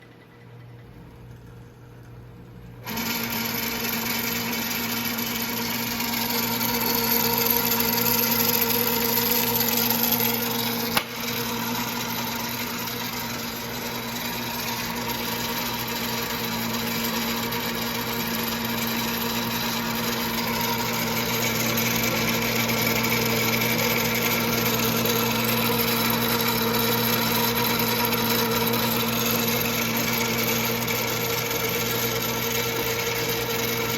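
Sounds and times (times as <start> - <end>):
lathe motor whine and hum: 2.7 - 33.9
sharp click: 10.9 - 11.3.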